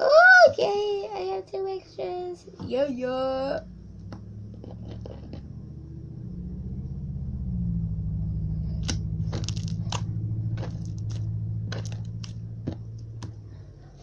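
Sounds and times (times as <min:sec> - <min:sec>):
low hum: 0:00.0 - 0:14.0
slime squishing by hand: 0:08.7 - 0:13.5.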